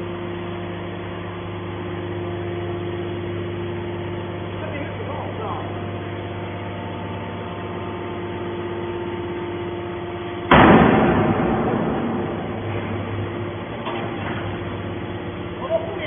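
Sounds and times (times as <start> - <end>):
baler machinery humming: 0.0 - 16.0
loud crash: 10.5 - 14.4.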